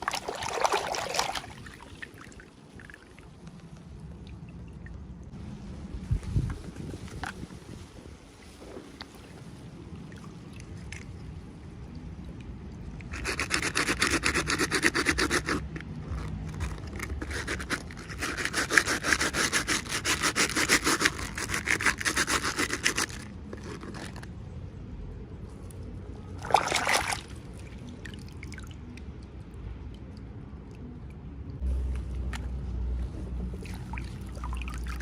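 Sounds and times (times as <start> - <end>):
hands rubbing and scraping packaging: 13.1 - 24.4.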